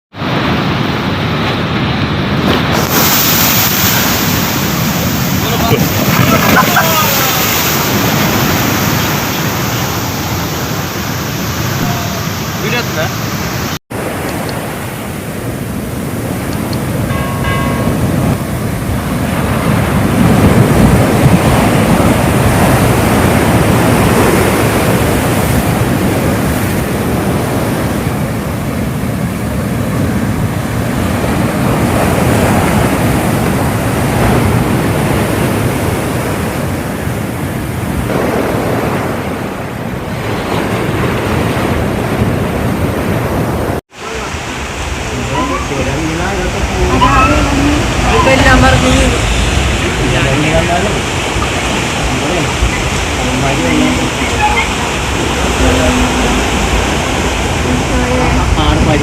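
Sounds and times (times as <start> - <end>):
wind gusting on microphone: 0.1 - 59.0
heavy rain pouring: 0.2 - 17.1, 42.8 - 59.0.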